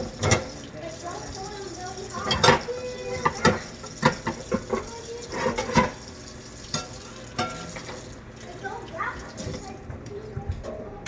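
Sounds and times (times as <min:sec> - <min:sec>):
dishes and cutlery clinking: 0:00.0 - 0:00.6, 0:02.2 - 0:06.0, 0:06.6 - 0:08.1.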